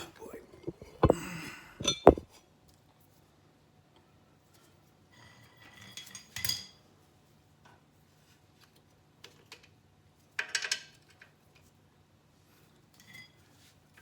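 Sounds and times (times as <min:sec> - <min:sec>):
metal hand tools clinking: 0:01.8 - 0:02.2.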